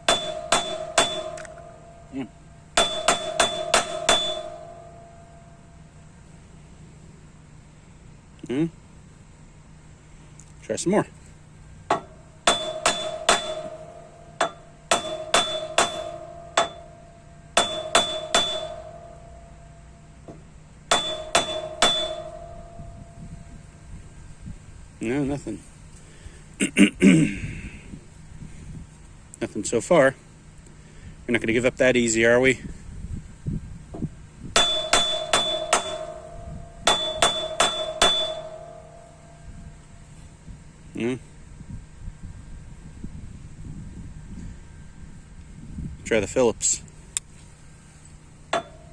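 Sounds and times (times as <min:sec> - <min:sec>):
screwdriver striking steel: 0:00.0 - 0:01.9, 0:02.8 - 0:05.0, 0:11.9 - 0:17.0, 0:17.6 - 0:19.2, 0:20.9 - 0:22.8, 0:34.6 - 0:39.1.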